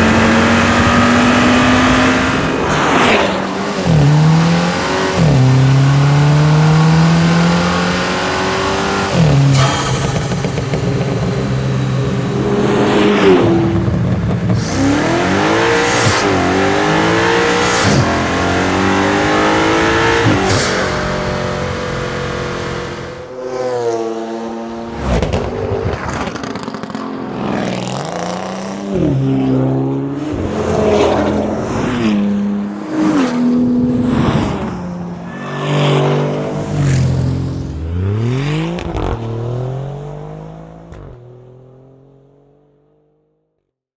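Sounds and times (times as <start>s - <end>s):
car engine revving: 0.0s - 42.2s.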